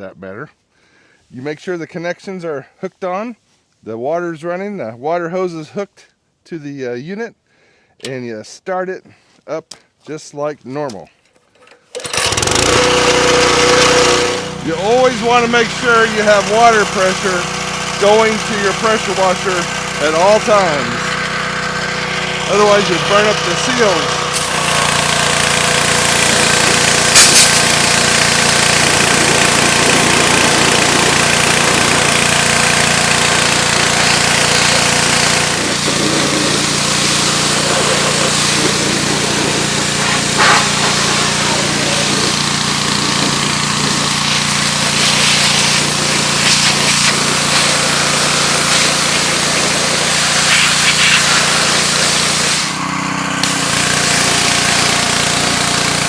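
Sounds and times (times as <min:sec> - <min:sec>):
pressure washer engine hum: 0:12.0 - 0:56.0
pressure washer hiss: 0:12.5 - 0:56.0.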